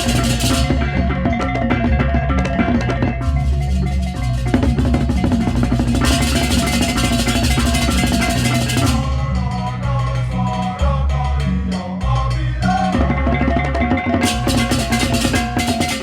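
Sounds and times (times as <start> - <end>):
clashing cymbals: 0.0 - 1.6, 3.2 - 9.5
drums: 0.0 - 16.0
gongs: 0.0 - 16.0.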